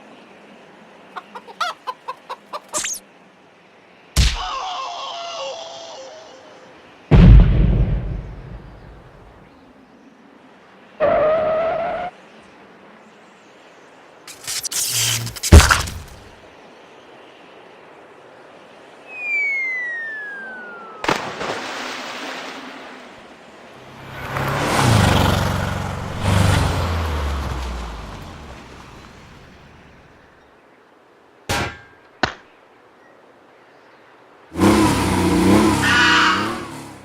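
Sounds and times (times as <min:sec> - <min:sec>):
sharp hit: 0:07.1 - 0:09.1, 0:14.3 - 0:16.3
noisy rush with low tones: 0:07.1 - 0:09.5
thin falling whistle: 0:19.1 - 0:21.4.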